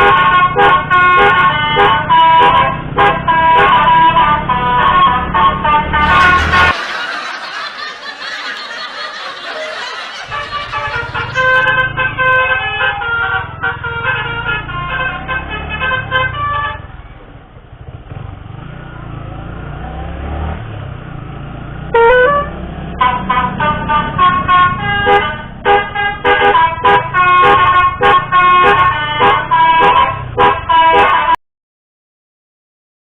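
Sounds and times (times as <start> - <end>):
musical bus horn melody: 0.0 - 6.8, 9.7 - 17.1, 21.8 - 31.4
street noise: 0.0 - 31.4
vehicle engine rumble: 0.0 - 31.4.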